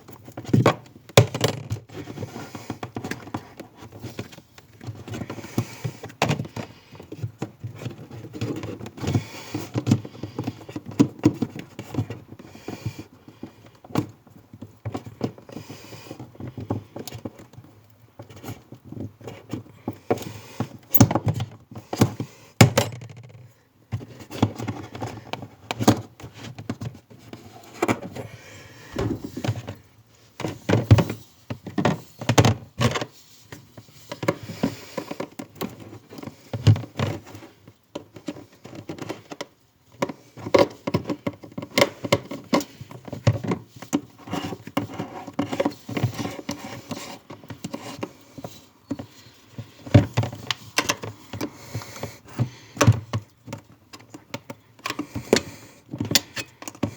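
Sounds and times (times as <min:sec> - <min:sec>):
knocks and clicks of tools: 0:28.2 - 0:29.8.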